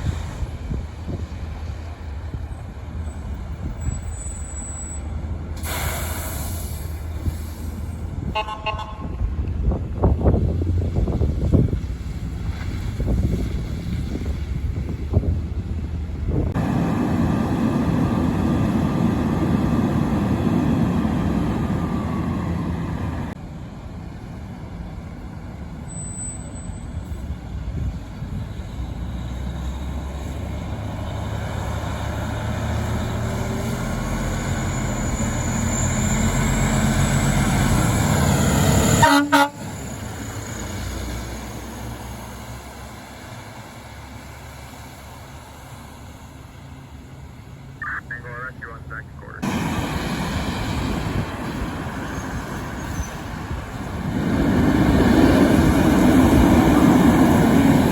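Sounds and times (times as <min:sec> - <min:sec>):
heavy fire truck engine: 0:00.0 - 0:57.9
traffic rumble: 0:00.0 - 0:57.9
fire truck air horns: 0:05.6 - 0:09.2, 0:38.9 - 0:39.7.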